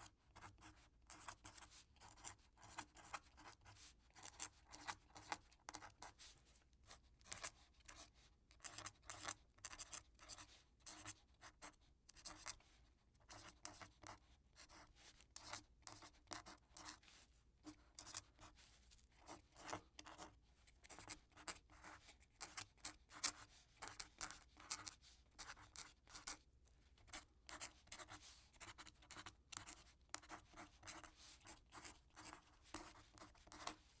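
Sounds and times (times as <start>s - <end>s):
quill pen scratching on paper: 0.4s - 6.2s, 20.9s - 26.4s, 27.1s - 33.8s.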